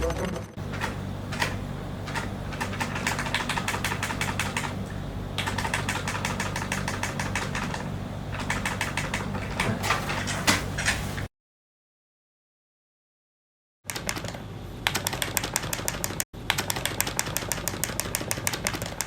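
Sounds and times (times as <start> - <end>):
keyboard typing: 0.6 - 11.3
low hum: 0.6 - 11.3.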